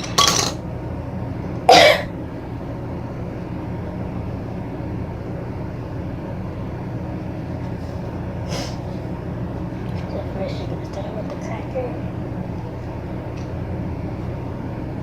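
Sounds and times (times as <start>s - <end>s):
hard object clattering: 0.0s - 0.6s
steady low hum: 0.0s - 15.0s.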